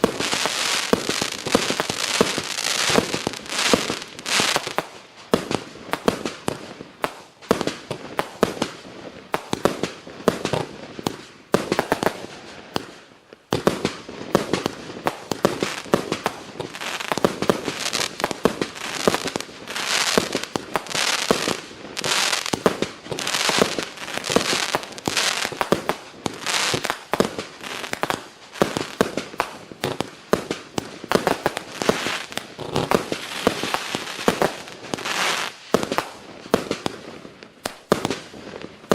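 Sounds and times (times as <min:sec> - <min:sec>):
firework bursts with crackle: 0:00.0 - 0:38.9.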